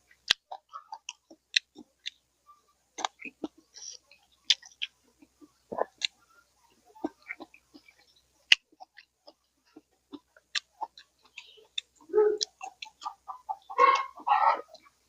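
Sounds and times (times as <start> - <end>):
person chewing food: 0.1 - 2.2, 3.0 - 14.1.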